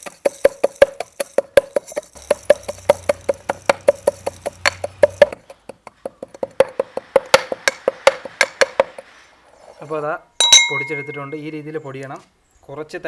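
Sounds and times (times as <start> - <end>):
pestle pounding in mortar: 0.0 - 9.0.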